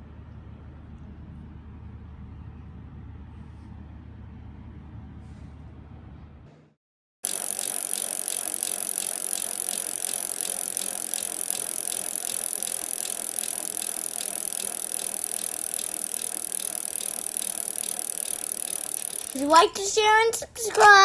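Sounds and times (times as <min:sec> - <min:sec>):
mechanical rattling whirr: 0:07.3 - 0:21.0.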